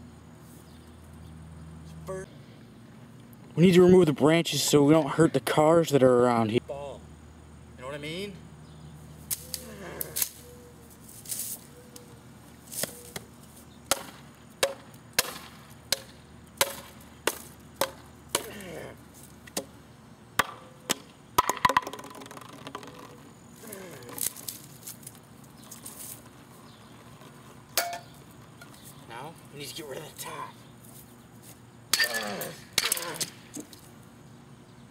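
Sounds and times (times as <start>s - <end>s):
chopping blows on wood: 13.9s - 18.6s.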